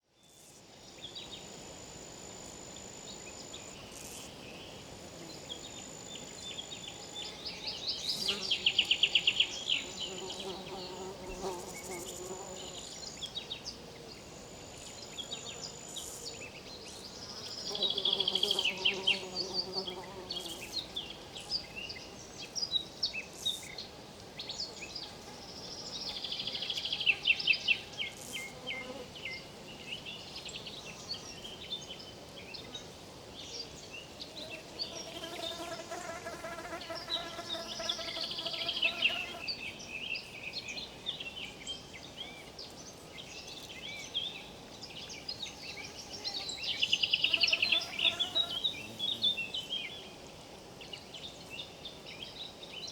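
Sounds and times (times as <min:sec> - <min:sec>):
insects buzzing and trilling: 0:00.2 - 0:21.7, 0:34.4 - 0:40.4, 0:42.9 - 0:49.8.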